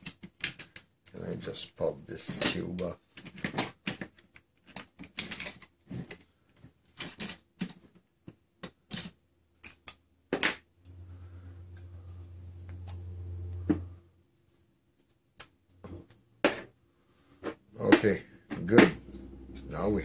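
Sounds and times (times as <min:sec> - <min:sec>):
steady low hum: 0:10.8 - 0:14.2, 0:18.5 - 0:20.0.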